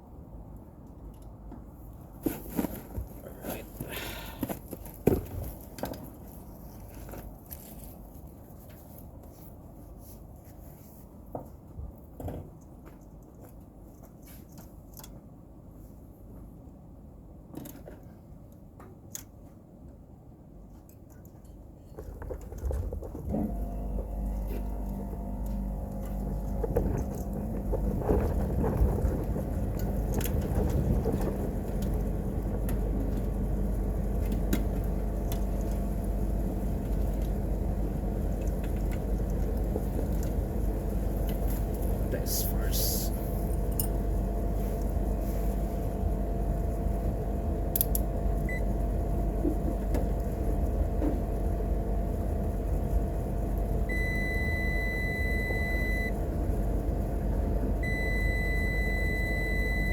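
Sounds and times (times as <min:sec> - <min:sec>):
machine motor humming: 0:23.3 - 0:42.1.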